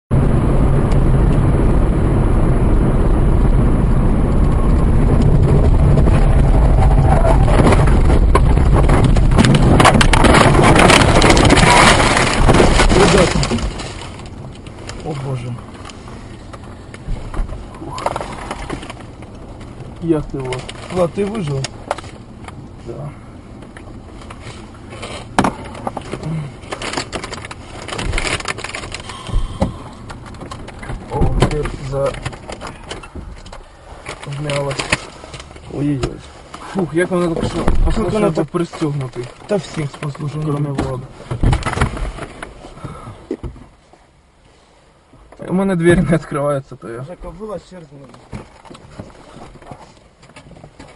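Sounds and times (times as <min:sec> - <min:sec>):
car engine and road rumble: 0:00.1 - 0:50.9
car crash scraping and clatter: 0:04.4 - 0:43.7.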